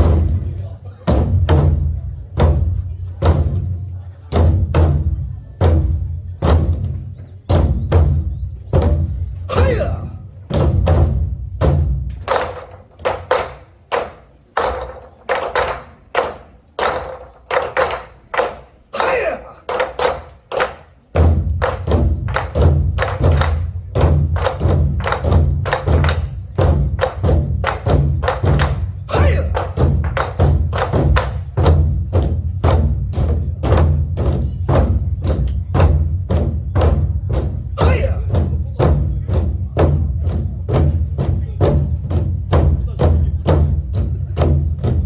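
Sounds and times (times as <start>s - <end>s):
heavy low beat: 21.0s - 45.0s.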